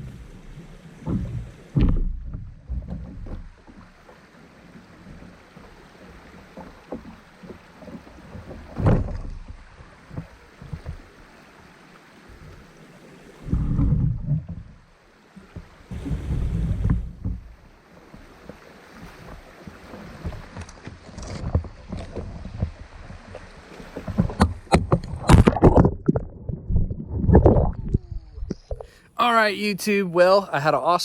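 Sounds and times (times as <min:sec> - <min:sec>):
water against hull: 0:00.0 - 0:31.0
knocks against boat: 0:01.0 - 0:03.9, 0:06.5 - 0:11.1, 0:15.5 - 0:19.4, 0:24.0 - 0:26.0.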